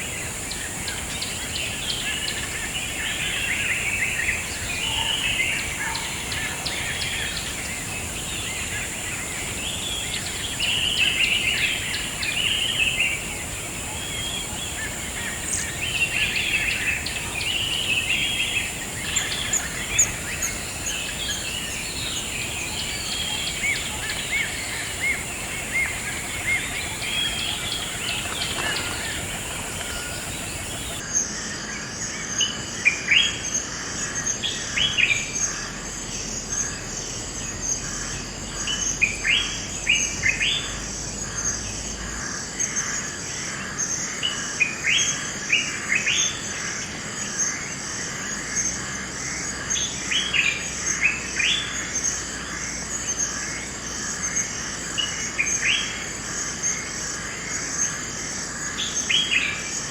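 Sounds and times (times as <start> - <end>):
high insect hiss: 0.0 - 31.0
small birds chirping and singing: 0.0 - 31.0
pulsing insect chorus: 0.0 - 31.1, 33.5 - 59.9.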